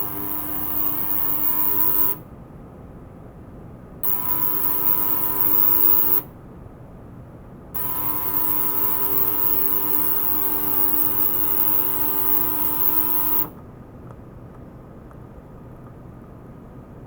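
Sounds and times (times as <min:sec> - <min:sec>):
ultrasonic probe humming and hissing: 0:00.0 - 0:02.2, 0:04.0 - 0:06.3, 0:07.8 - 0:13.6.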